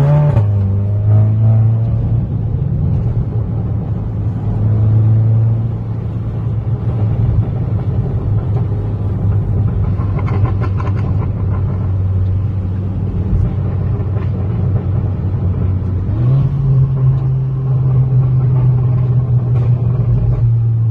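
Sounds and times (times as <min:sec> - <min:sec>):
car engine running: 0:01.9 - 0:20.9
exhaust crackles and pops: 0:06.7 - 0:20.9.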